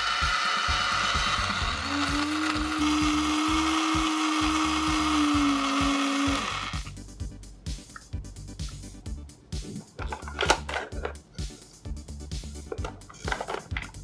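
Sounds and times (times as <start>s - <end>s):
toy blender whirring: 0.0s - 6.9s, 13.1s - 13.8s.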